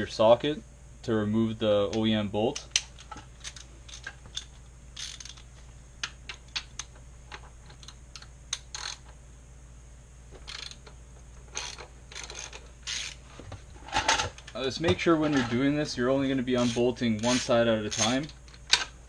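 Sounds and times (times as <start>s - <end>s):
socket ratchet clicking: 2.6s - 9.2s, 10.4s - 13.2s, 16.6s - 19.0s.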